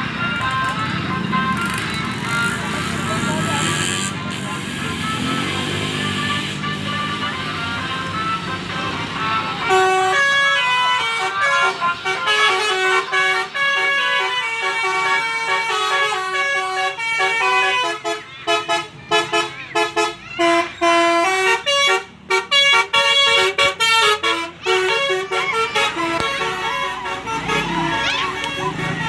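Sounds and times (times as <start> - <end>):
bus musical horn playing melody: 0.0 - 29.0.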